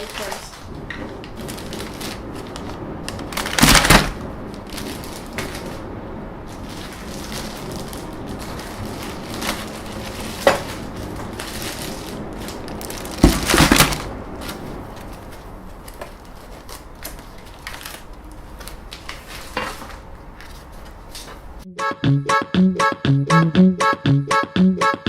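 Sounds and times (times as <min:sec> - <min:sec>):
packaging rustling: 0:00.0 - 0:21.6
parts knocking and clattering: 0:13.1 - 0:14.1.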